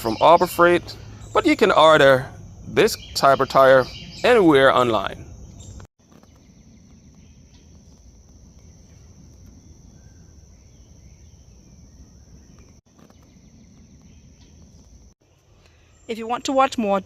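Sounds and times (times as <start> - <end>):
faint bird chirps: 0.0 - 16.8
insects trilling: 0.0 - 17.0.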